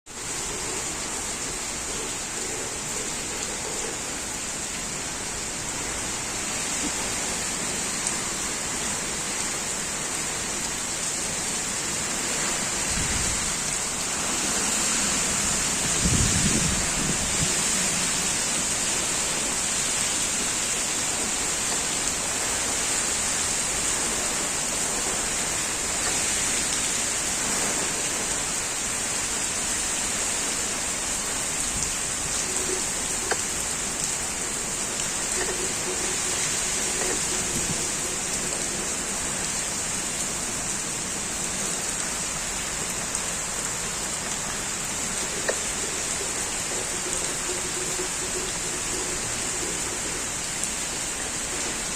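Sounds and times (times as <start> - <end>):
heavy rain hissing: 0.1 - 51.9
raindrop ticks: 5.8 - 10.8, 17.3 - 28.5, 30.0 - 51.9.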